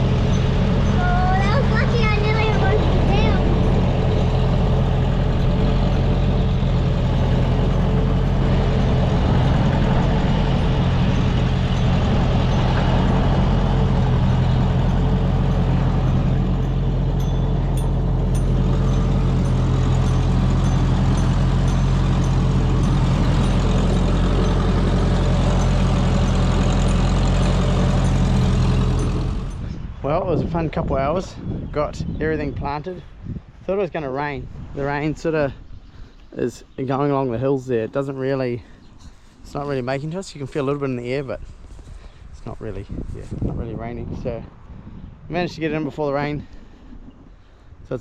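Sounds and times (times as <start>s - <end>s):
tractor engine running steadily: 0.0s - 30.5s.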